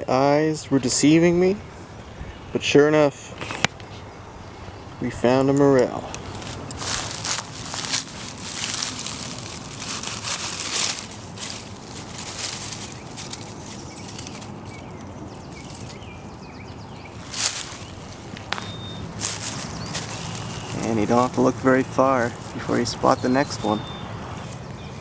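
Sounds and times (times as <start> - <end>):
sharp rustle: 6.2 - 16.4, 17.1 - 24.7
footsteps rustling through leaves: 6.2 - 24.8
faint bird chirps: 12.5 - 21.3, 21.9 - 25.0.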